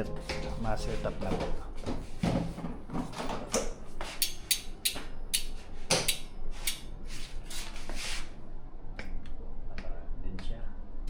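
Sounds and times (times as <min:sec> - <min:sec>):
tools clicking and scraping on bike: 0:04.2 - 0:06.9.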